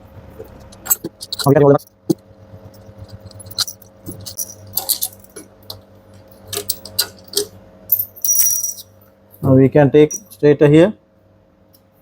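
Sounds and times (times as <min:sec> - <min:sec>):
metallic clicks of tools and nuts: 0:03.1 - 0:05.8.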